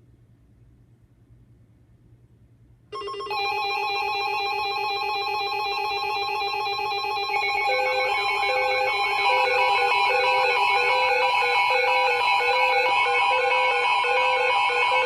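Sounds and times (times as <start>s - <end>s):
steady electronic alert tones: 3.0s - 15.0s
tone hopping between two pitches: 3.0s - 15.0s.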